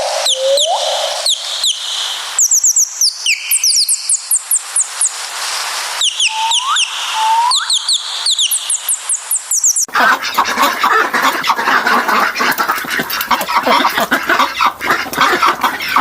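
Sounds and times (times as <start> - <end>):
high bird chirps: 0.0 - 5.2, 6.0 - 9.9
low rising bird whistles: 0.0 - 5.2, 6.0 - 9.9.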